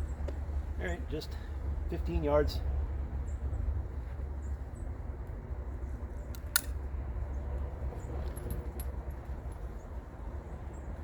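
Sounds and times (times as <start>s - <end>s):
sharp click: 6.3s - 6.8s.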